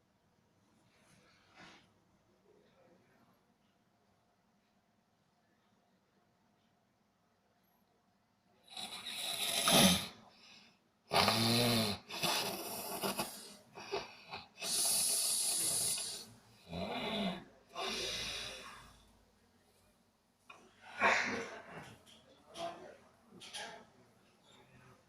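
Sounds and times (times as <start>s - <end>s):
person snoring: 8.7s - 10.2s, 11.1s - 18.9s
long hissing breath: 14.6s - 16.3s, 17.8s - 18.9s.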